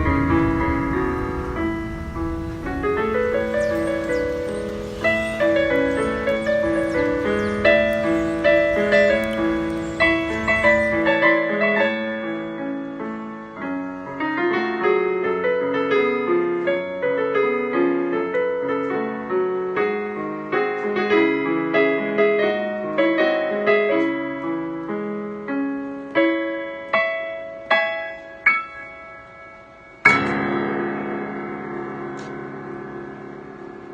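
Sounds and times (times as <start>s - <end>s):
hiss: 0.0s - 11.2s
solo piano: 0.0s - 33.9s.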